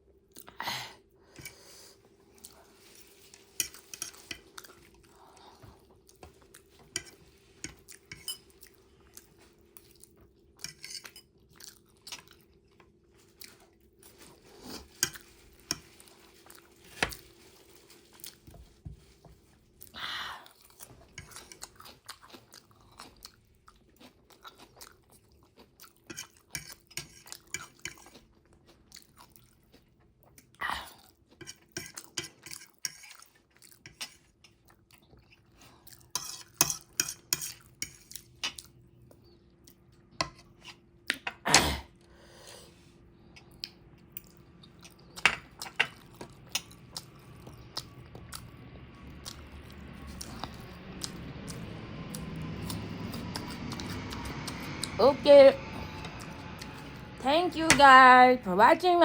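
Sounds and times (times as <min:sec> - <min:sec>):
person chewing crunchy food: 0:02.3 - 0:18.4, 0:19.8 - 0:40.1, 0:43.2 - 0:55.0
cutlery clinking against dish: 0:06.9 - 0:08.5, 0:36.2 - 0:38.6.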